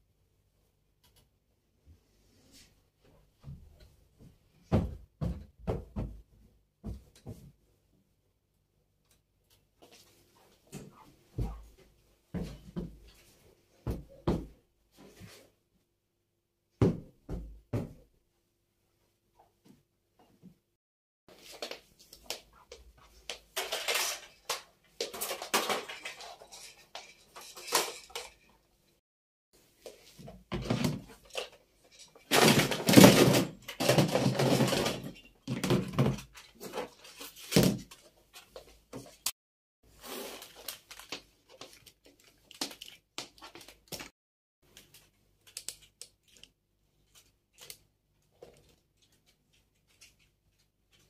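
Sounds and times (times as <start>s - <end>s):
objects being handled and set down: 21.3s - 28.7s, 29.8s - 39.3s.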